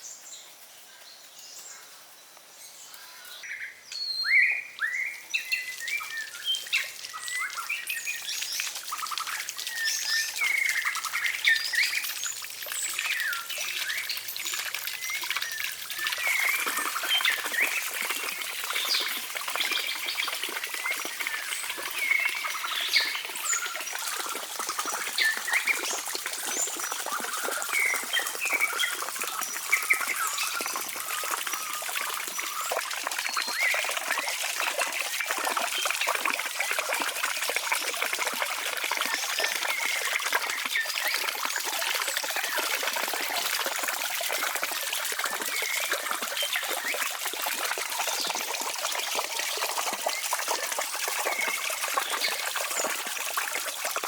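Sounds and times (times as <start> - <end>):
water trickling: 4.8 - 54.0.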